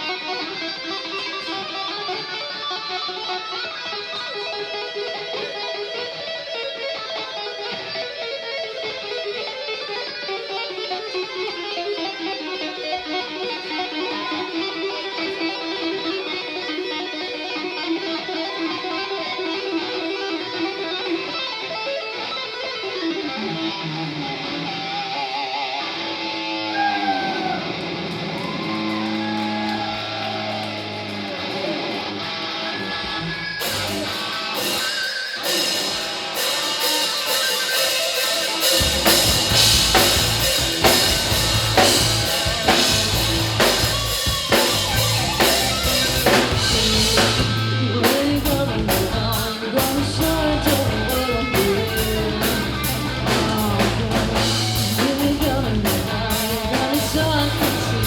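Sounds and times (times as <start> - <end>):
drums: 0.0 - 58.0
electric guitar bending notes: 0.0 - 58.0
bass guitar: 26.6 - 58.0.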